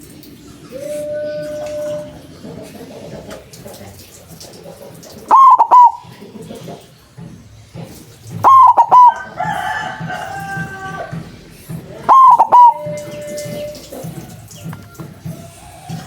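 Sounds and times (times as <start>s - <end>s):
dove cooing: 0.6s - 3.8s, 4.7s - 6.8s, 8.3s - 16.0s.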